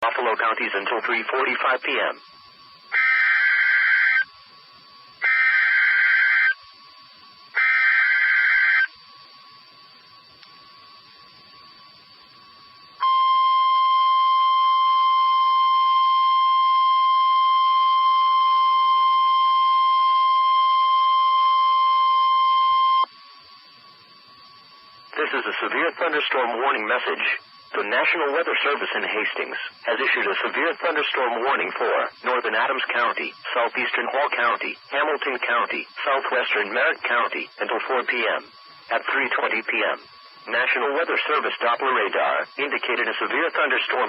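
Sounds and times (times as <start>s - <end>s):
warbling digital data bursts: 0.0s - 13.0s, 23.0s - 44.0s
steady warning alarm tone: 0.0s - 44.0s
low hiss: 23.1s - 44.0s.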